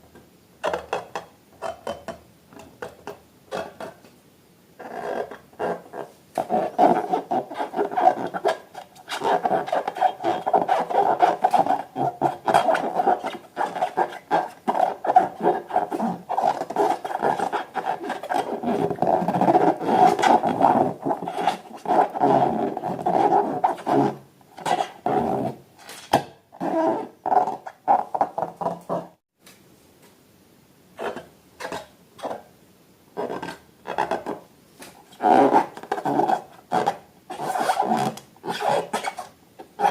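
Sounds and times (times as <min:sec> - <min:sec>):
rubber balloons rubbing: 0:04.8 - 0:26.0, 0:26.6 - 0:29.2, 0:35.0 - 0:39.9.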